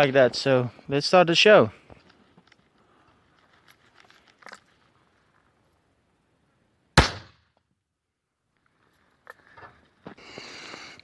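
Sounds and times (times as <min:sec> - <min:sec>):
gunshot with echo: 0:07.0 - 0:07.4.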